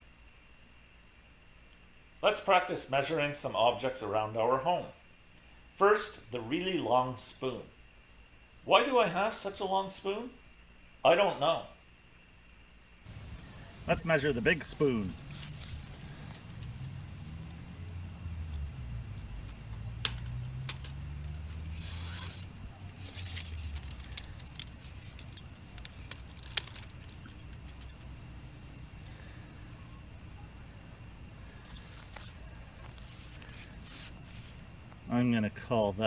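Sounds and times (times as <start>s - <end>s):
faint high pulsing chirp: 13.1s - 16.3s, 27.3s - 34.4s
handling rumble: 13.1s - 35.8s
tape measure clicking and rattling: 18.5s - 28.1s.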